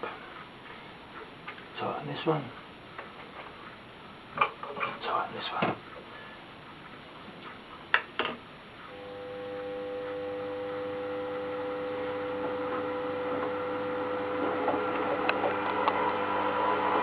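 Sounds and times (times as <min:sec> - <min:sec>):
drill motor humming: 0:08.9 - 0:17.0.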